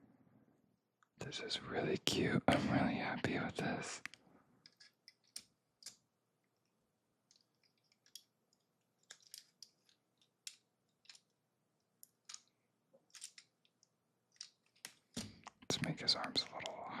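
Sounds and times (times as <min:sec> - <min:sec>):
plastic toy bricks clicking: 0:07.3 - 0:11.4, 0:12.0 - 0:15.2.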